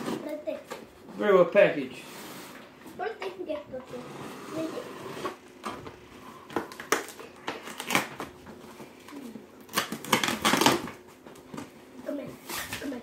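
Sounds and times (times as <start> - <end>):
cardboard packaging rustling: 6.5 - 11.6.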